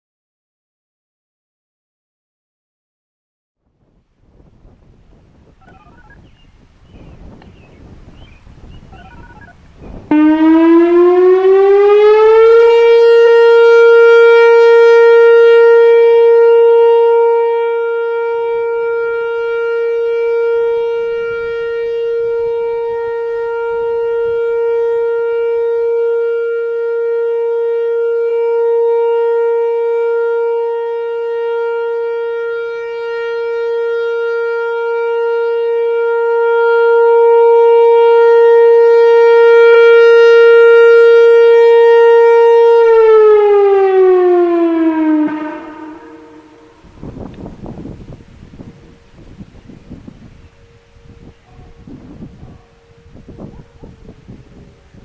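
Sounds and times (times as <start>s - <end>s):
outdoor warning siren: 3.7s - 55.0s.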